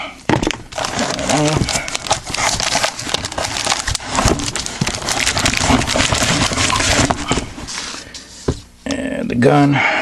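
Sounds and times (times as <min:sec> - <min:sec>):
packaging crinkling: 0:00.4 - 0:08.3.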